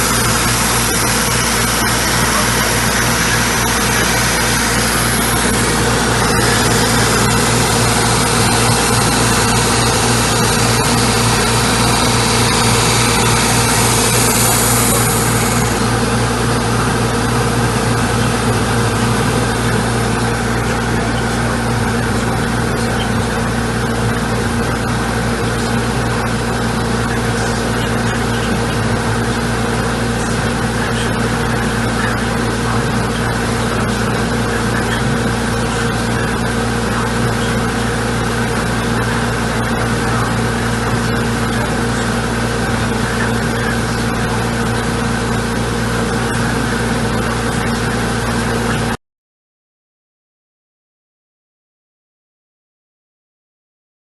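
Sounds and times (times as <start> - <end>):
drum sander running: 0.0 - 49.0.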